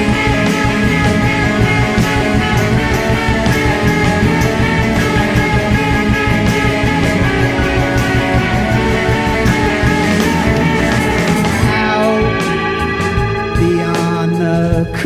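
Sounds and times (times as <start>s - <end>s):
bass guitar: 0.0s - 15.0s
electric guitar: 0.0s - 15.0s
steady drum beat: 0.0s - 15.0s.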